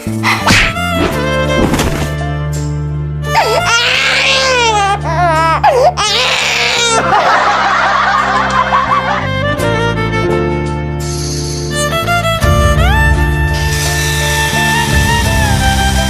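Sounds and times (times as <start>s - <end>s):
background music: 0.0s - 16.0s
voices laughing mockingly: 6.8s - 9.3s.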